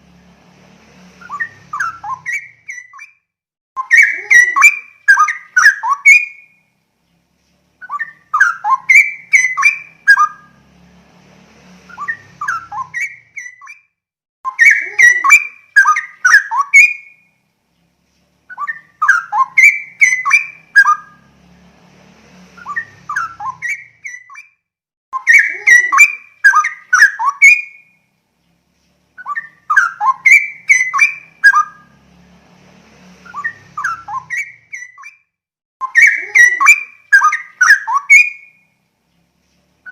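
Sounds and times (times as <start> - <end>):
bird singing bubbling phrases: 3.8 - 6.6, 7.8 - 10.5, 14.5 - 17.2, 18.5 - 21.2, 25.2 - 27.9, 29.2 - 31.8, 35.8 - 38.6.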